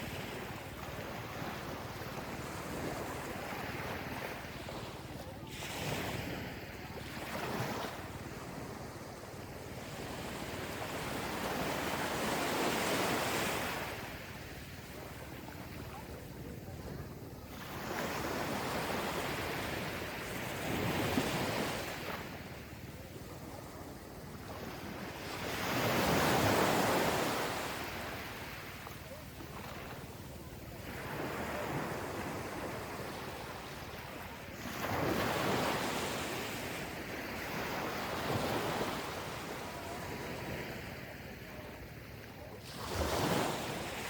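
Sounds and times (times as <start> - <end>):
ocean waves on shore: 0.0 - 44.0.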